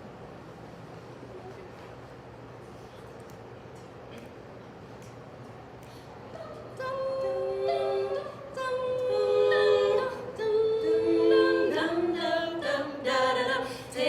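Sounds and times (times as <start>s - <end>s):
a cappella group singing chords: 6.3s - 14.0s.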